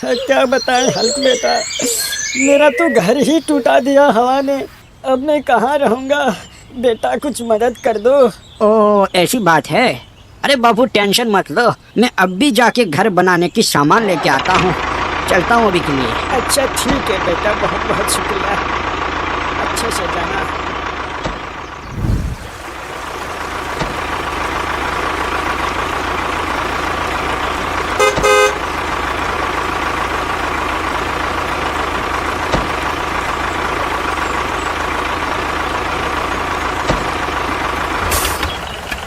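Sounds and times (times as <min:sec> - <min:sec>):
vehicle engine running: 0:00.0 - 0:04.8, 0:14.2 - 0:39.0
horn toot: 0:28.0 - 0:28.7.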